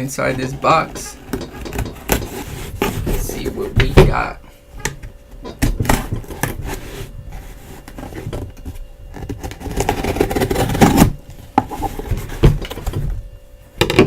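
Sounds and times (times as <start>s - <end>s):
cardboard and packing rustling: 0.0s - 13.4s.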